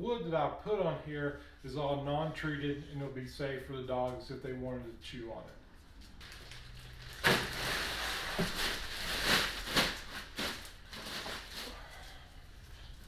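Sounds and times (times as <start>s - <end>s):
rustling: 5.8s - 13.0s.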